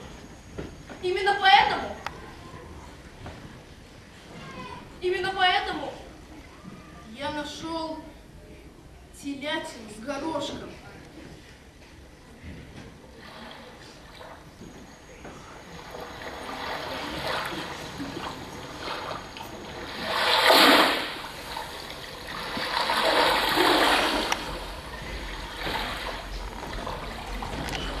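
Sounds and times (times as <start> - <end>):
water splashing in surges: 15.6 - 28.0.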